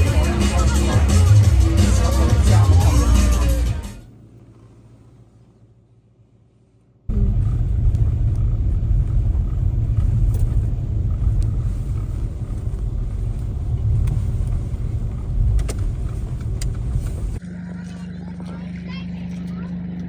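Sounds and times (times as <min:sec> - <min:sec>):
steady low rumble: 0:00.0 - 0:05.9, 0:06.5 - 0:20.0.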